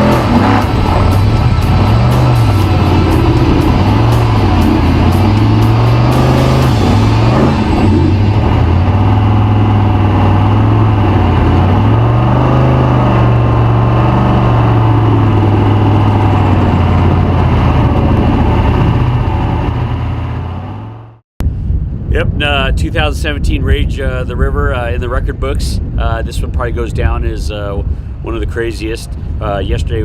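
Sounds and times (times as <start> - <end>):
truck engine running under load: 0.0 - 21.2.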